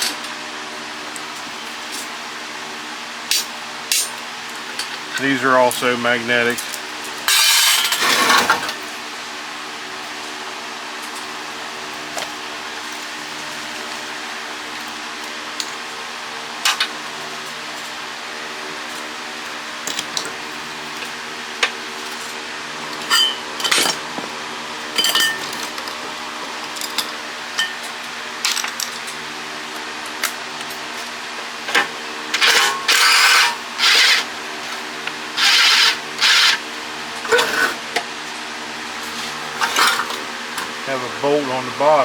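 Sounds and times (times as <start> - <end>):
room fan hum: 0.0 - 42.0
metal parts clinking: 7.3 - 8.5
power drill bursts: 32.4 - 34.4, 35.4 - 36.7.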